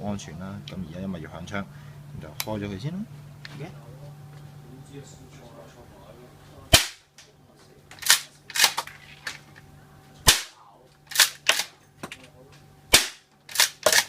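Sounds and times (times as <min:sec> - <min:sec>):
airsoft shotgun shots: 0:06.7 - 0:07.0, 0:10.2 - 0:11.7, 0:12.9 - 0:14.0
shotgun pump racking clacks: 0:11.1 - 0:11.7, 0:13.5 - 0:14.0.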